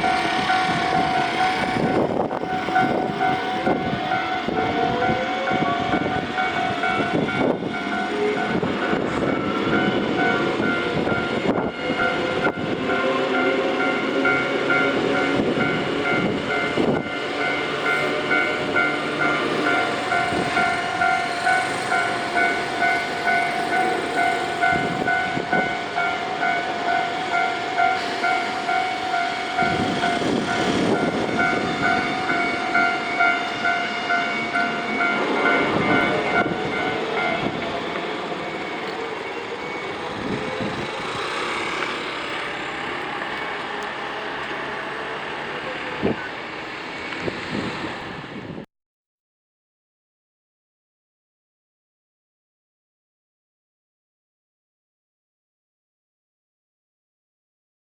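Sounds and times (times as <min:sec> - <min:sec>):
level crossing bell ringing: 0:00.0 - 0:40.6
train rumbling past: 0:00.0 - 0:48.7.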